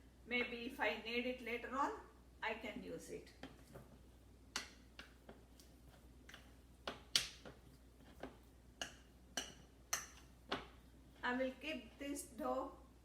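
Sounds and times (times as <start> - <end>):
dough squelching in a bowl: 3.2 - 12.2.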